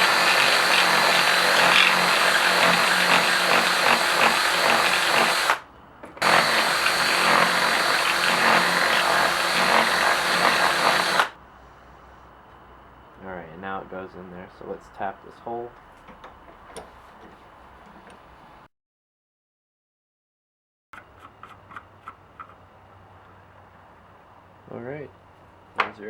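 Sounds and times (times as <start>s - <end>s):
power drill boring into plastic pipe: 0.0s - 5.6s, 6.2s - 11.4s.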